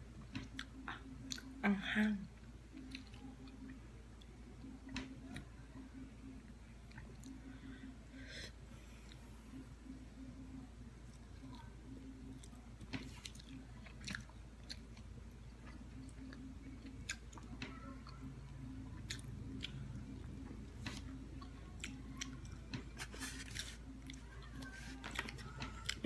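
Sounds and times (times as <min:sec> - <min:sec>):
faint steady hum: 0:00.0 - 0:26.0
person chewing and biting: 0:12.4 - 0:15.8, 0:19.0 - 0:20.0.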